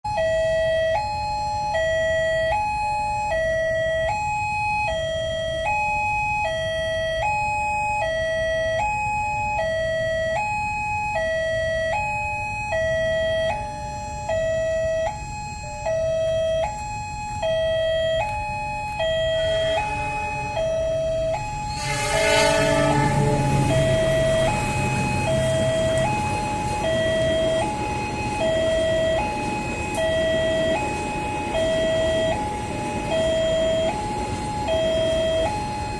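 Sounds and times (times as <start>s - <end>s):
level crossing two-tone siren: 0.0s - 35.9s
loud blaring sound: 18.8s - 35.9s.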